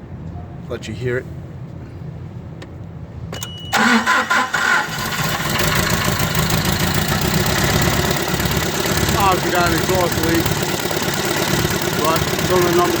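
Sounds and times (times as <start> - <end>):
car engine cranking and running: 3.4 - 13.0.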